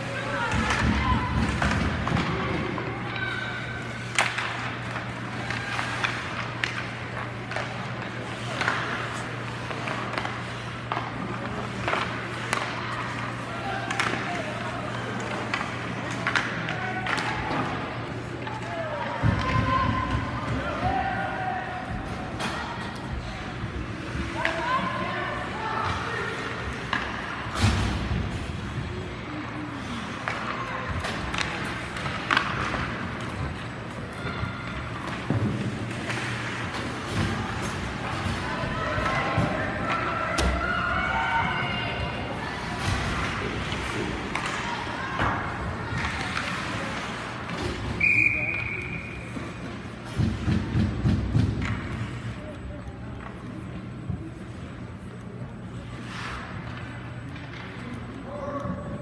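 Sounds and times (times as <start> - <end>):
hockey sticks or puck clacking: 0.0 - 41.3, 41.9 - 59.0.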